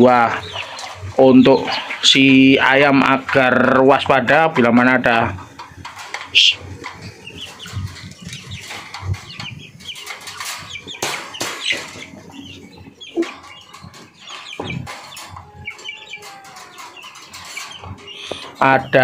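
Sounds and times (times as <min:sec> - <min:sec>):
chicks peeping and clucking: 0:00.0 - 0:19.0
birds scuffling and knocking: 0:04.4 - 0:19.0.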